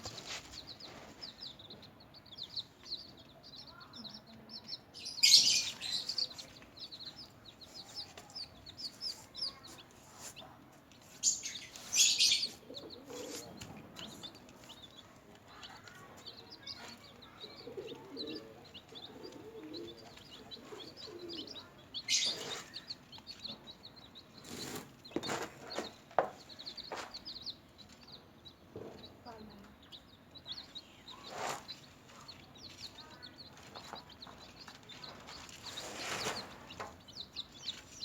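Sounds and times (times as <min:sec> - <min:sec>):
chicks peeping: 0:00.0 - 0:38.0
loud rustling bursts: 0:35.2 - 0:36.8.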